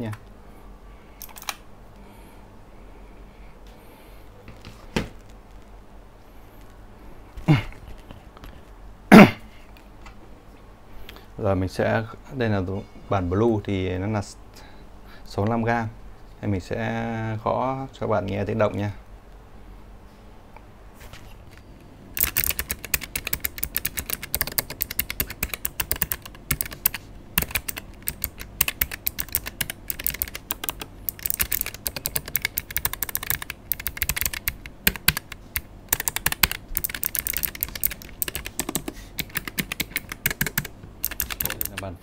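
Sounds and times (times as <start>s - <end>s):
clicky keyboard typing: 1.2s - 1.6s, 22.2s - 41.8s.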